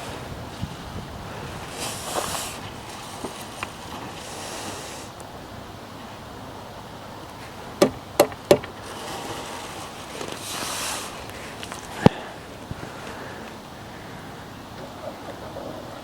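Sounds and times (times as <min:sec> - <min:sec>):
background hiss: 0:00.0 - 0:16.0
sharp knocks: 0:07.8 - 0:08.8.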